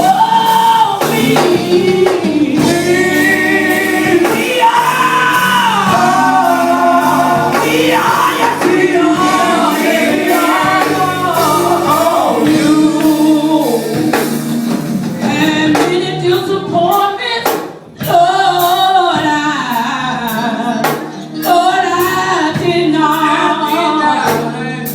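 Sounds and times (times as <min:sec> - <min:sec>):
choir singing: 0:00.0 - 0:14.5
regular beat: 0:00.0 - 0:19.4.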